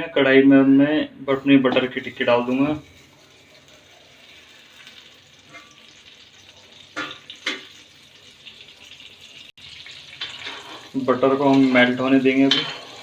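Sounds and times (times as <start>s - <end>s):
butter sizzling in a pan: 1.8s - 13.0s.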